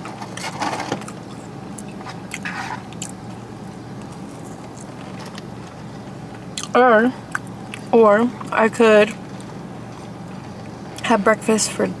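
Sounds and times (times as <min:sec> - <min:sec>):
chewing mouth sounds: 0:01.1 - 0:03.2, 0:06.6 - 0:08.6.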